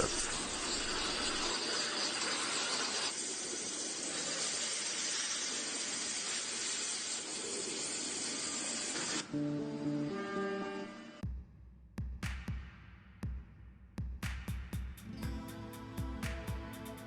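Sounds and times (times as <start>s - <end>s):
high-pressure water jet hissing: 0.0s - 9.3s.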